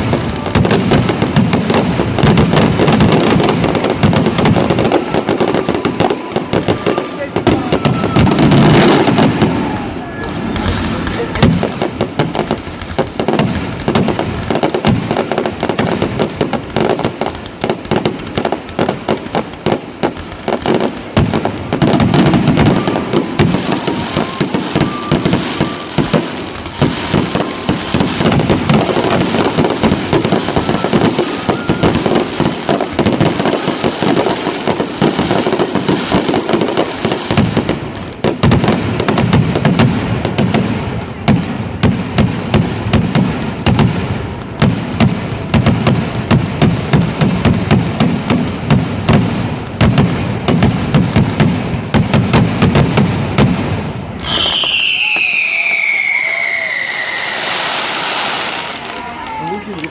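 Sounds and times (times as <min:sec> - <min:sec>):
fireworks bangs: 0:00.0 - 0:59.9.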